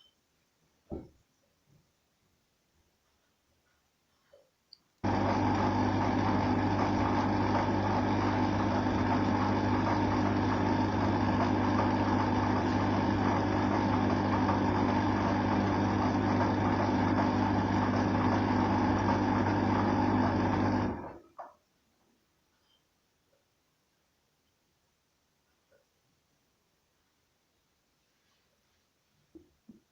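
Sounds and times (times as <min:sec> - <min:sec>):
machine humming: 0:05.0 - 0:21.2.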